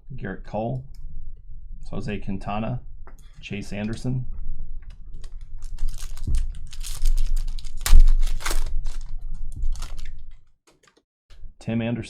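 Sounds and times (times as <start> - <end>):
foil wrappers crinkling: 5.1 - 11.0.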